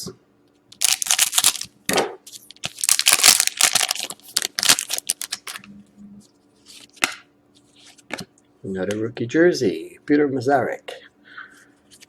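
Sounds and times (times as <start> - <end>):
card pack wrapper tearing: 0.8 - 1.7, 2.3 - 5.6.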